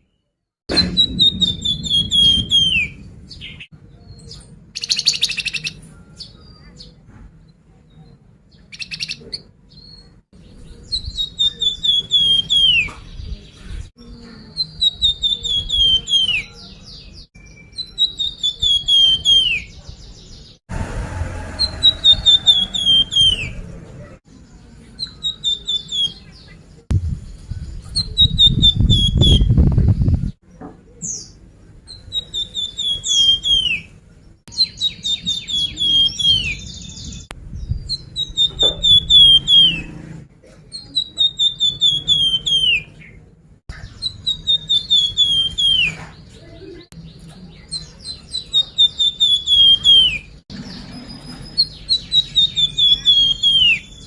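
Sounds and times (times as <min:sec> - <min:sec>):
songbird whistled song: 0:00.0 - 0:07.0, 0:07.9 - 0:20.6, 0:21.6 - 0:23.7, 0:24.3 - 0:33.9, 0:34.5 - 0:40.0, 0:40.6 - 0:54.0
low rumble: 0:00.7 - 0:03.7, 0:20.7 - 0:22.5, 0:26.9 - 0:30.4.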